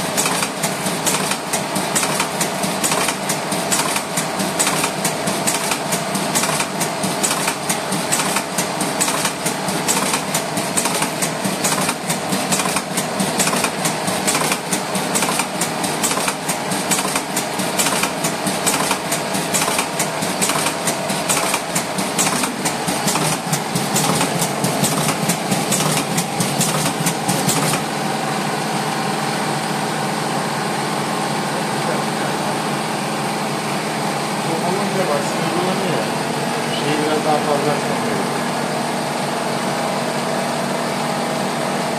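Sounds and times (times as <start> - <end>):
rapid mechanical clicking: 0.0 - 27.9
steady motor hum: 0.0 - 41.9.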